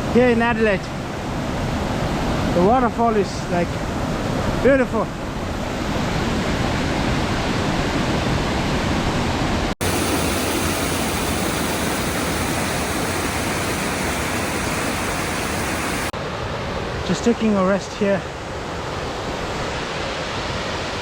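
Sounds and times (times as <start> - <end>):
waterfall rushing: 9.8 - 16.1.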